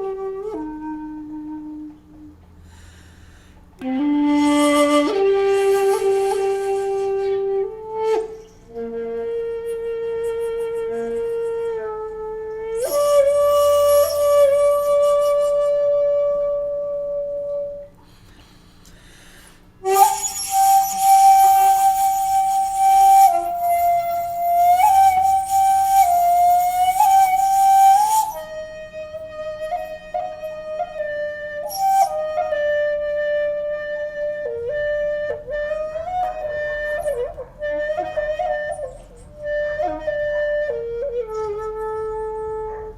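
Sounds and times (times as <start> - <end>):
shakuhachi long held notes: 0.0 - 18.6, 19.4 - 42.9.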